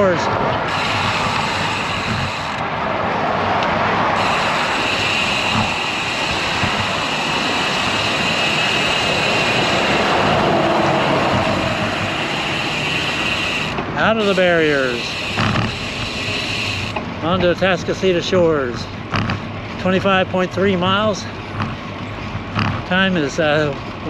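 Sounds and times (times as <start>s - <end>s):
highway traffic rushing past: 0.0s - 24.0s
wind noise on microphone: 0.3s - 8.4s.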